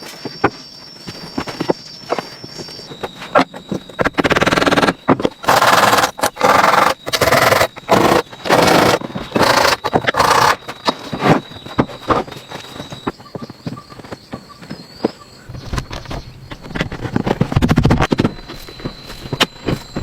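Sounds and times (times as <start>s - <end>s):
rhythmic scraping strokes: 1.2s - 15.2s.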